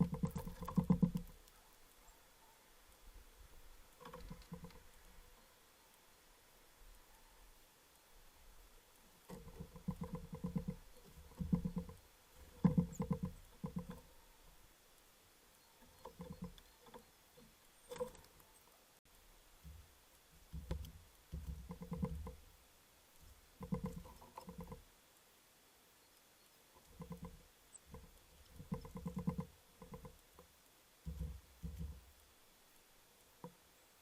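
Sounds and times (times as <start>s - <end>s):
bird pecking at feeder: 0.0s - 5.1s, 9.2s - 14.3s, 15.9s - 18.6s, 19.6s - 22.5s, 23.2s - 24.9s, 26.8s - 32.3s.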